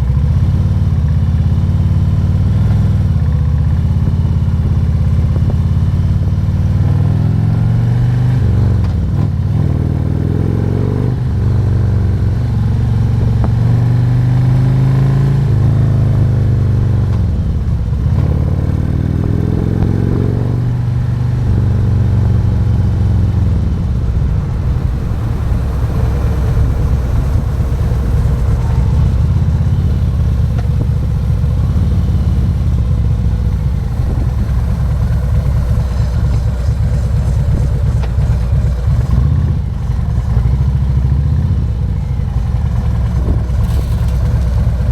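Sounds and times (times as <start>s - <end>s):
motorcycle engine accelerating: 0.0s - 44.9s
road noise: 0.0s - 44.9s.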